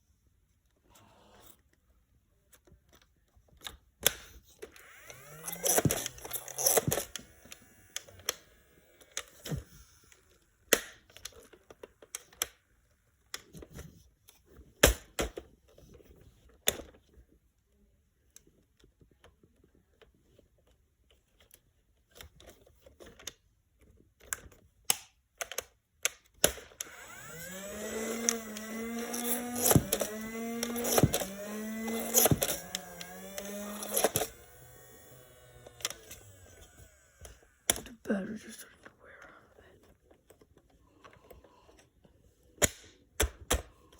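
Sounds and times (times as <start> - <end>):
flywheel motors whirring: 4.6 - 10.5, 26.4 - 38.0.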